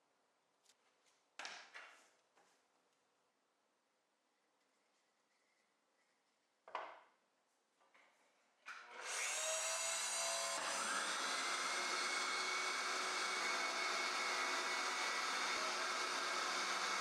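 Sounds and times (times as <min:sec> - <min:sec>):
router motor whining: 0:08.8 - 0:17.0.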